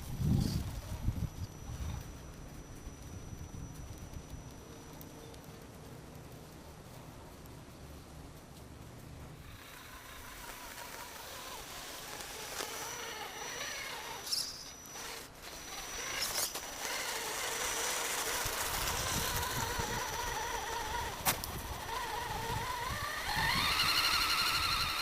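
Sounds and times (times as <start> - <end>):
electric motor whining: 9.4 - 25.0.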